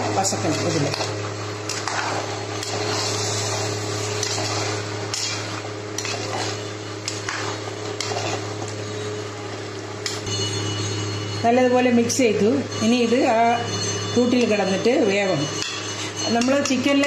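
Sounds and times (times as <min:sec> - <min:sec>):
steady low hum: 0:00.0 - 0:17.0
spoon clinking against pot: 0:15.6 - 0:17.0.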